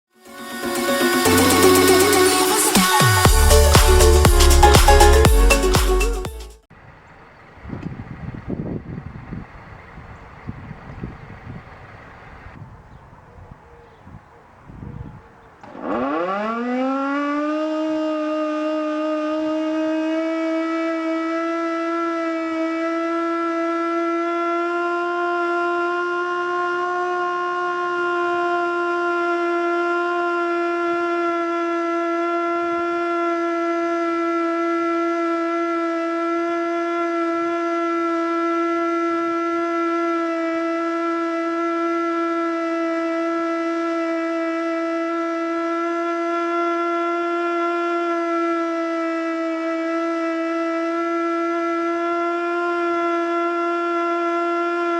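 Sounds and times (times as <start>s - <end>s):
wavering siren tone: 0.2s - 5.3s, 15.7s - 54.9s.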